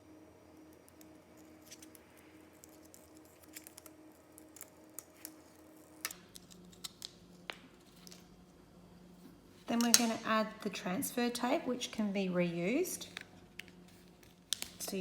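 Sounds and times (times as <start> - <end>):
low steady hum: 0.0 - 15.0
vinyl peeling clicks and crinkles: 0.7 - 8.3, 13.0 - 15.0.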